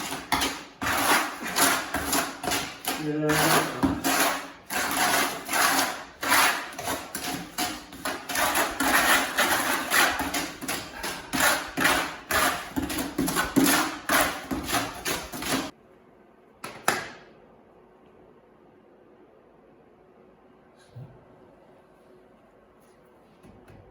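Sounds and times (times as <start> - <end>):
hand tool scraping: 0.0 - 15.7.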